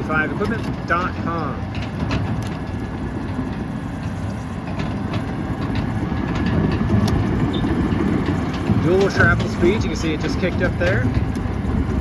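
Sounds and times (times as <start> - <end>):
diesel engine under load: 0.0 - 12.0
track links clanking: 0.0 - 12.0.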